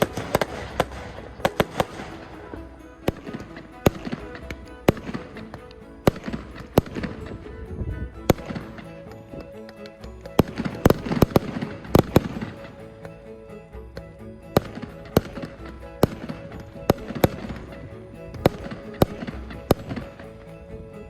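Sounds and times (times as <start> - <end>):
background music: 0.0 - 21.0.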